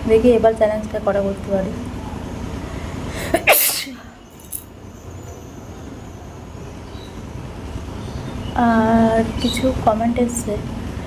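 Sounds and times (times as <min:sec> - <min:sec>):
woman sneezing: 0:03.2 - 0:04.1.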